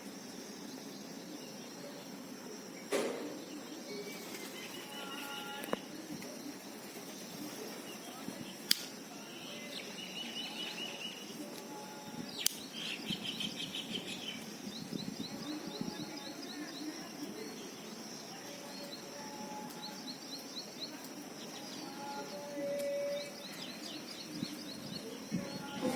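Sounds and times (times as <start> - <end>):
steady background noise: 0.0 - 25.9
small birds chirping and trilling: 0.1 - 25.9
sharp clicks: 8.7 - 9.0, 12.4 - 12.7.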